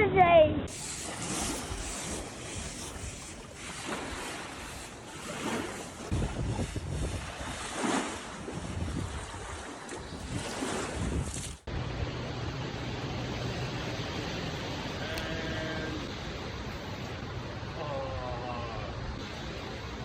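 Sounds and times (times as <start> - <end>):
wind buffeting microphone: 0.7 - 12.5
sea waves washing: 0.7 - 20.0.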